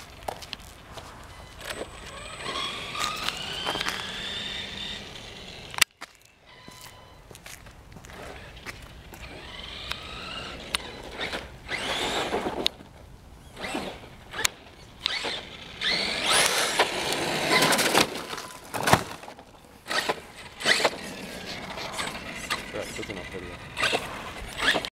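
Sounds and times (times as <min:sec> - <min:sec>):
tyres and drivetrain rushing: 0:00.8 - 0:05.8, 0:13.6 - 0:24.9
electric motor whining: 0:00.9 - 0:05.8, 0:08.0 - 0:12.7, 0:13.4 - 0:18.7, 0:19.8 - 0:24.9.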